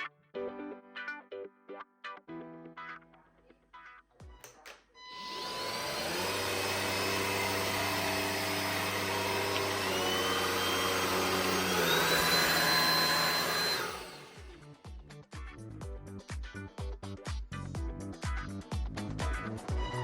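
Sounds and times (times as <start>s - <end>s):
vacuum cleaner motor whining: 5.0s - 14.7s.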